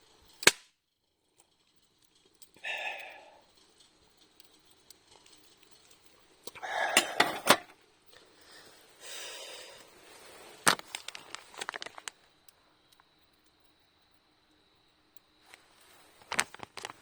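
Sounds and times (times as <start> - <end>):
camp gear rustling: 5.0 - 12.3, 15.4 - 17.0
small clicks and taps: 9.8 - 17.0.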